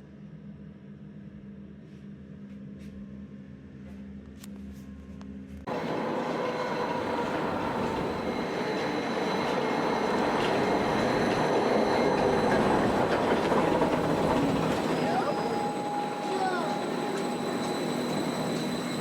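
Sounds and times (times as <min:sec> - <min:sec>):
thin high tones: 0:05.7 - 0:19.0
train rolling on rails: 0:05.7 - 0:19.0.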